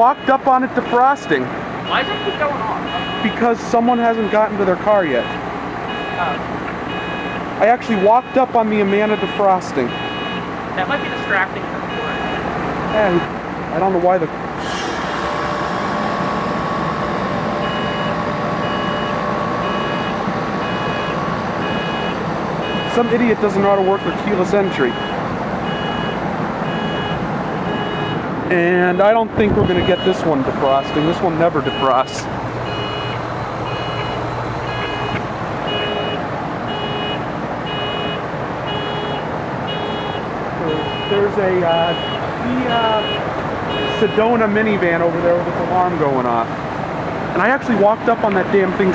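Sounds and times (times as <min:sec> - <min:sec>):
car electronic warning beeps: 0:00.0 - 0:13.4, 0:14.6 - 0:44.6
steady mechanical hiss: 0:14.6 - 0:24.6.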